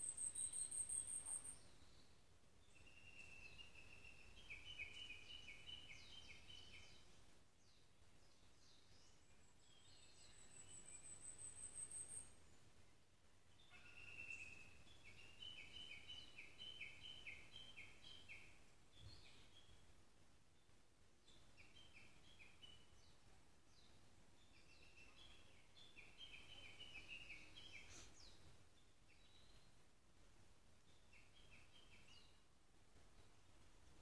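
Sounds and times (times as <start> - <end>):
faint songbird whistling: 2.7 - 7.1, 13.6 - 19.8, 24.6 - 28.5.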